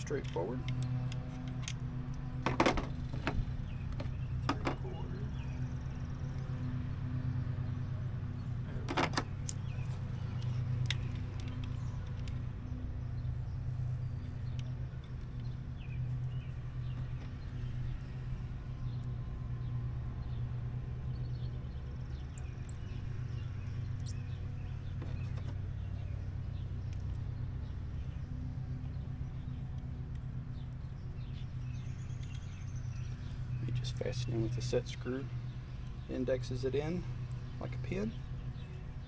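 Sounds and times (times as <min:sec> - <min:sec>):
metal clicks and clinks: 0:08.8 - 0:12.4.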